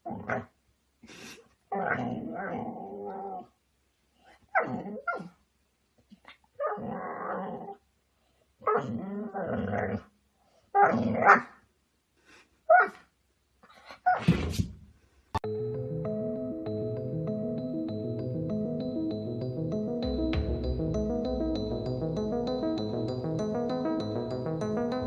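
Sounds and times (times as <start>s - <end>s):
dog barking and growling: 0.0s - 0.6s, 1.7s - 3.6s, 4.3s - 5.4s, 6.2s - 7.8s, 8.6s - 10.1s, 10.7s - 11.6s, 12.7s - 14.6s.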